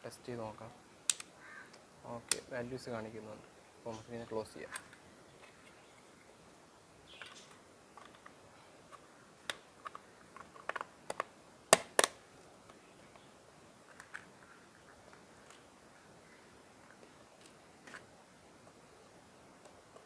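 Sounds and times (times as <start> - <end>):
plastic cover snapping shut: 10.6 - 12.2.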